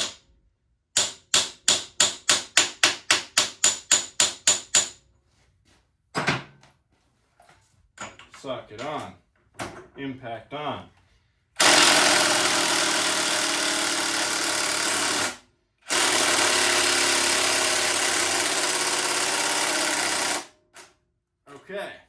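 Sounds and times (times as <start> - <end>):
impact wrench hammering: 0.0 - 0.2, 0.9 - 5.0, 11.6 - 20.9.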